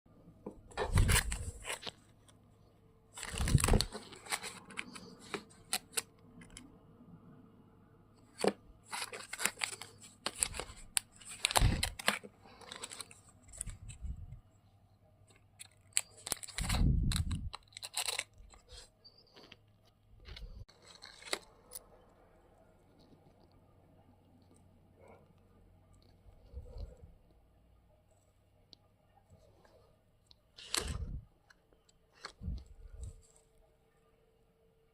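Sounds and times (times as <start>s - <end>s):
plastic wrapper crinkling and tearing: 0.7s - 2.4s, 3.1s - 6.7s, 8.3s - 14.2s, 15.3s - 19.6s, 20.2s - 22.0s, 30.6s - 31.2s.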